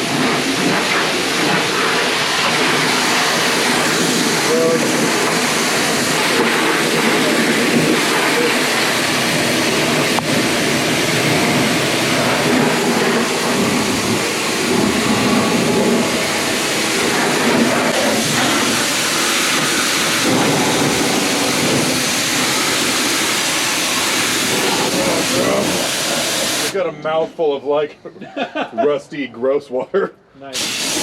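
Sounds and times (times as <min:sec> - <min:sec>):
pressure washer spraying car: 0:00.0 - 0:26.7, 0:30.6 - 0:31.0.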